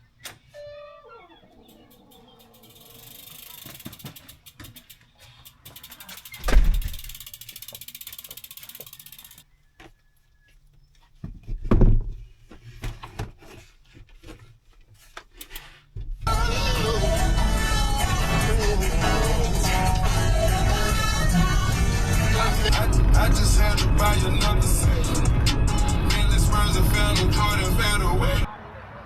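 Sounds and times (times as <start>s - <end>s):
scattered clicks: 1.7s - 9.4s
bicycle freewheel ratchet buzzing: 1.9s - 9.4s.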